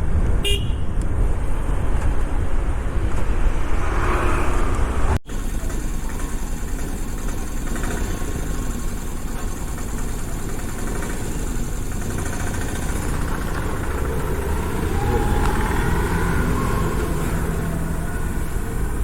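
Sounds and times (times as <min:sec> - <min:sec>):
engine idling: 0:04.7 - 0:19.0.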